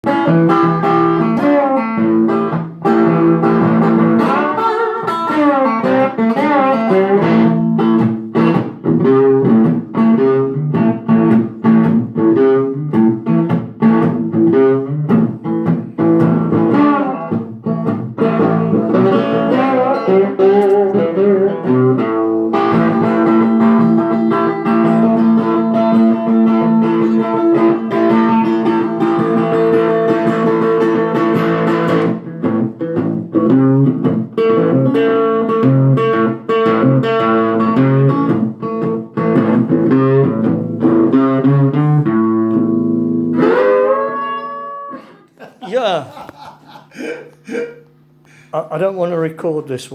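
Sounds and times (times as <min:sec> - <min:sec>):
blues guitar single-note lines: 0:00.0 - 0:45.3
ringing guitar chords: 0:00.0 - 0:45.3.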